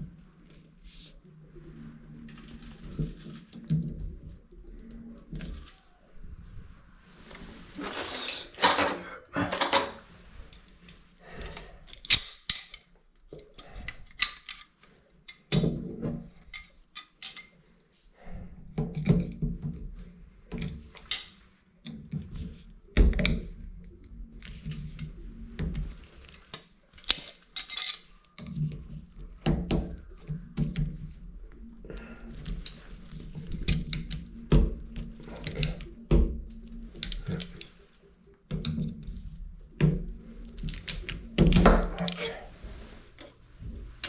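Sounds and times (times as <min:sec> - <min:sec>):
metal tools clinking on brass: 0:27.6 - 0:28.1.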